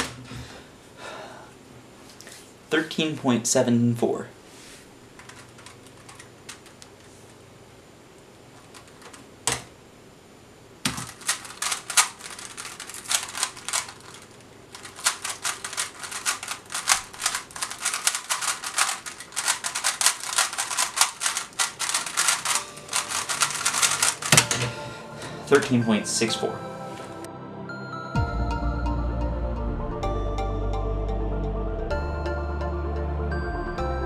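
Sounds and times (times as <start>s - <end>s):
plastic cube clicking and clacking: 5.2s - 6.8s, 10.9s - 24.7s.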